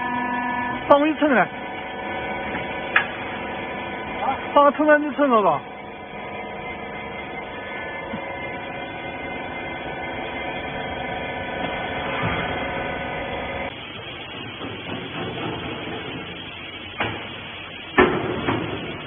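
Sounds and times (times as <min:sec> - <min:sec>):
press baler machine hum: 0:00.0 - 0:19.0.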